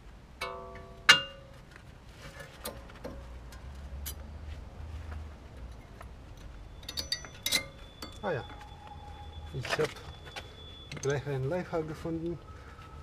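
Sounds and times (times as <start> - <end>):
metal plate clinking on bracket: 6.8 - 8.2.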